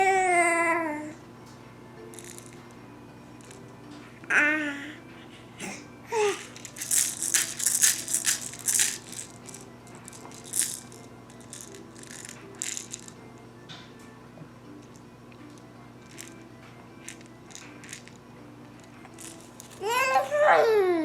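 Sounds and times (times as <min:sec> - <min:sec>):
rattle being shaken: 0:02.1 - 0:02.7, 0:03.4 - 0:03.6, 0:06.2 - 0:13.4, 0:14.8 - 0:20.2.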